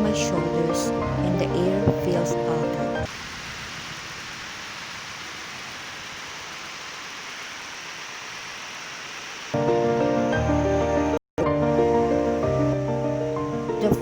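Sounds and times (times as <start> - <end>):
music: 0.0 - 3.1, 9.6 - 14.0
steady rain hiss: 0.0 - 14.0.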